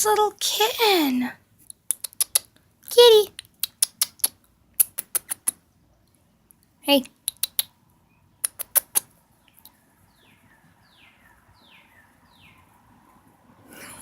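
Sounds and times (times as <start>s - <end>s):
sharp clicks: 1.6s - 2.6s, 3.3s - 5.6s, 6.5s - 7.8s, 8.4s - 9.8s.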